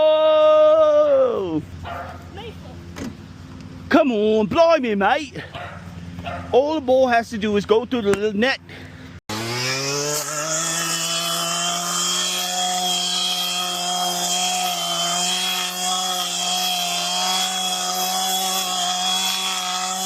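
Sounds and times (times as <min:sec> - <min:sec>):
small gasoline engine running: 0:08.6 - 0:20.0.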